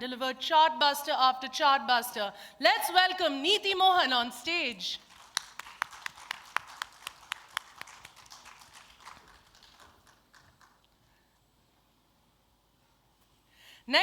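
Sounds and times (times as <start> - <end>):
hand clapping: 5.0 - 11.1.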